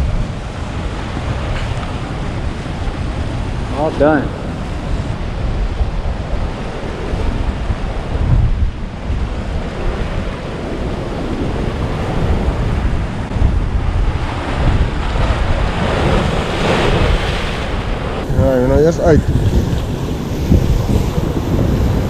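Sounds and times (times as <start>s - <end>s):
sea surf washing: 0.0s - 22.0s
wind buffeting microphone: 0.0s - 22.0s.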